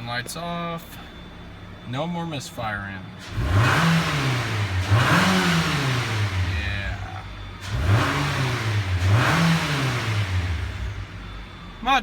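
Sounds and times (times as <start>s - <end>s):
car engine revving: 3.2s - 11.8s.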